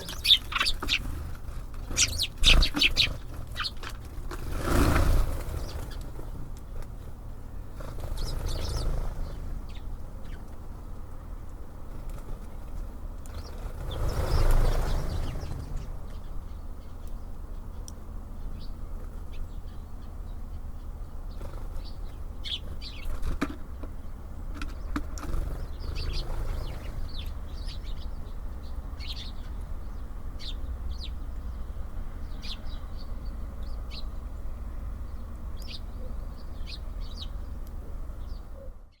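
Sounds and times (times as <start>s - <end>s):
wings fluttering: 0.0s - 10.6s, 11.9s - 16.3s, 21.3s - 27.5s
low background rumble: 0.0s - 39.0s
small birds chirping: 0.0s - 39.0s.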